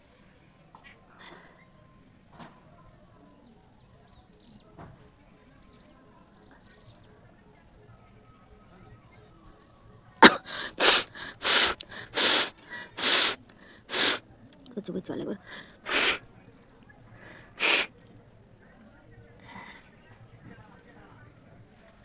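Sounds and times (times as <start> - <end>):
woman blowing air through nose: 10.2 - 14.2, 15.5 - 16.2, 17.6 - 17.9.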